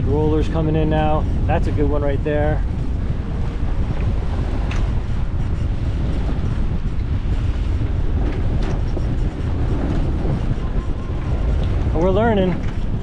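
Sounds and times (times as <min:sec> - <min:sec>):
water rushing along hull: 0:00.0 - 0:13.0
wind buffeting microphone: 0:00.0 - 0:13.0.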